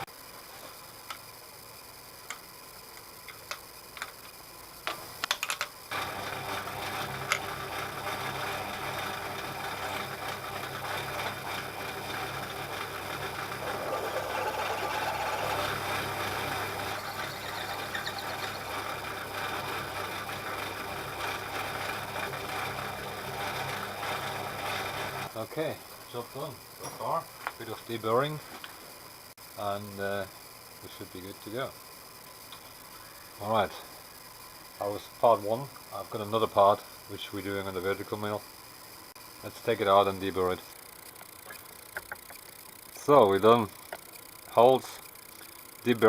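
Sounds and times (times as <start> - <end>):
milling machine humming and whirring: 5.9 - 25.4.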